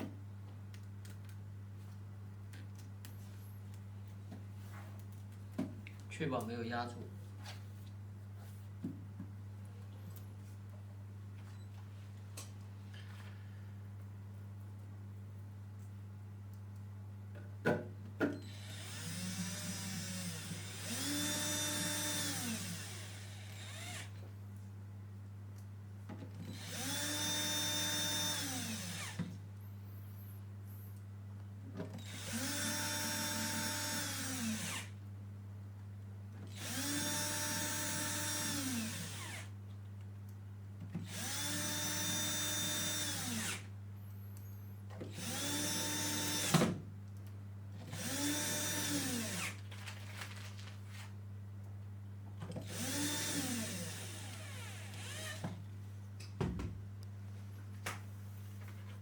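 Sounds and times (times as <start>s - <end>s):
electric screwdriver motor whine: 18.5s - 24.2s, 26.6s - 29.2s, 32.1s - 34.9s, 36.6s - 39.5s, 41.1s - 43.7s, 45.2s - 46.6s, 48.0s - 49.6s, 52.7s - 55.4s.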